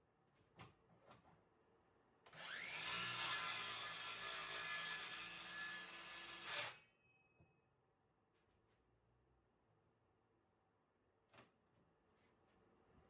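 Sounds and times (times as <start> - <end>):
power saw cutting countertop: 2.4 - 6.8.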